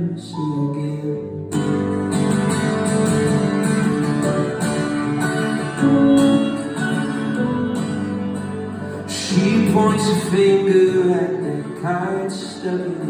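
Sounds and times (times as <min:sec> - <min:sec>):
strummed guitar chords: 0:00.0 - 0:13.0
live band playing: 0:02.2 - 0:11.6.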